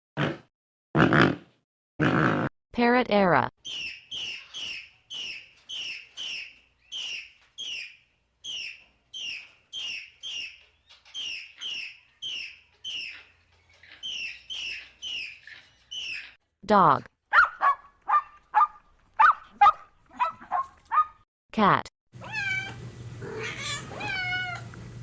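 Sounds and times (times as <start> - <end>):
parrot squawking: 3.6 - 16.4.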